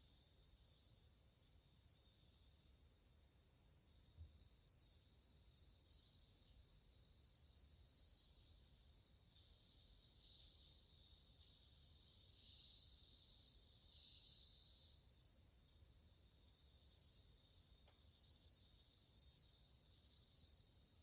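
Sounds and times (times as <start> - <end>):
crickets trilling: 4.6 - 21.0.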